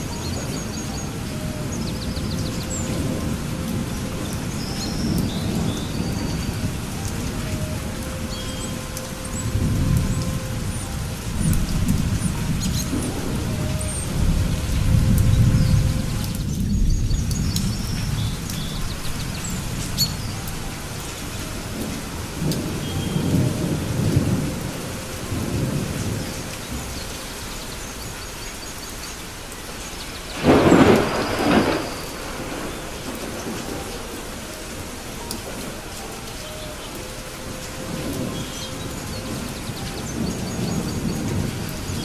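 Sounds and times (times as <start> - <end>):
thunder rumbling: 0.0 - 28.1, 30.2 - 42.0
heavy rain: 0.0 - 42.0
loud thunderclap: 30.3 - 34.1.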